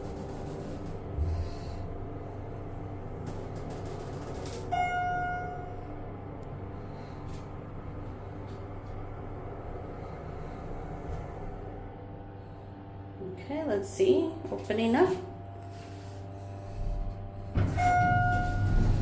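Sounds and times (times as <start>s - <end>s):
elevator hum: 0.0s - 19.0s
short pitched tone: 4.7s - 5.9s.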